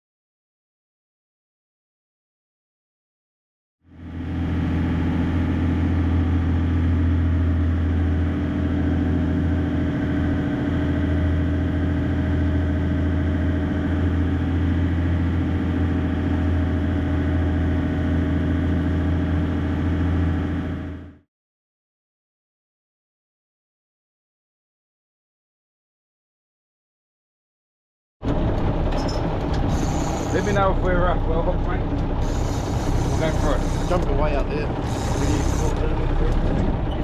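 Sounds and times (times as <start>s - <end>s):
boat engine droning: 3.9s - 21.2s, 28.2s - 37.0s.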